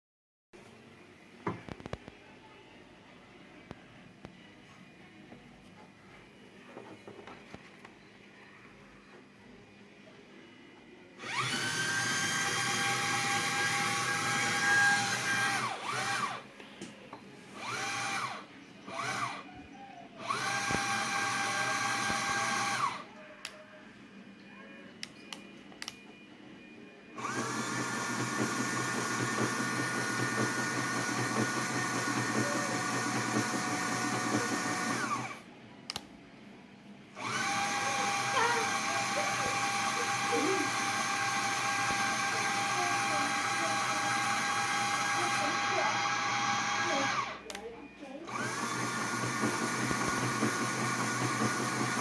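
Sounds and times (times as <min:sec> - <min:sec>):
small electric motor whining: 0:11.2 - 0:16.4, 0:17.6 - 0:19.5, 0:20.2 - 0:23.1, 0:27.2 - 0:35.4, 0:37.2 - 0:47.4, 0:48.3 - 0:52.0.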